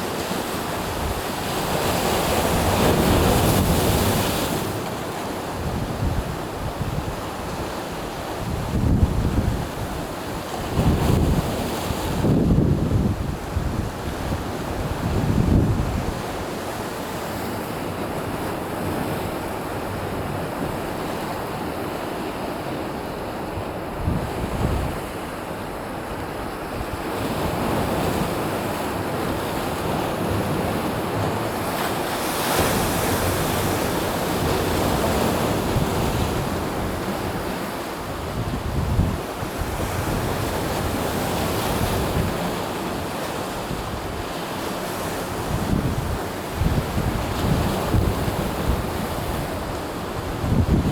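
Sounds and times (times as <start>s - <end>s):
sea waves breaking on shore: 0.0s - 50.9s
wind buffeting microphone: 8.4s - 16.3s, 38.2s - 42.6s, 45.3s - 50.9s.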